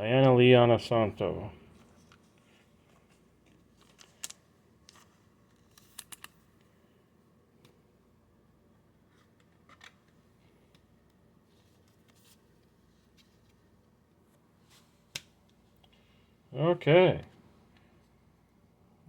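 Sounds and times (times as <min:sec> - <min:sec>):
trading cards clicking: 0:05.6 - 0:06.4.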